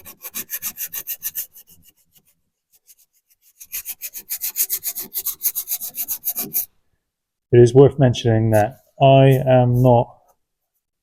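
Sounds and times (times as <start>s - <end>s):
sandpaper rubbing on metal: 0.0s - 2.0s, 2.8s - 6.7s.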